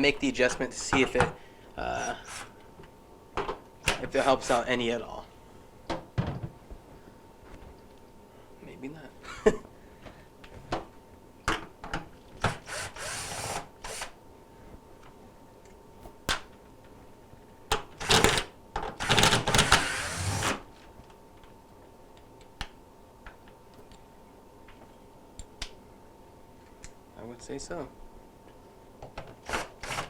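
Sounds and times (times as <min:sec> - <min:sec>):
power drill running: 0:02.2 - 0:02.5, 0:12.5 - 0:14.2, 0:19.0 - 0:20.6, 0:29.4 - 0:30.0.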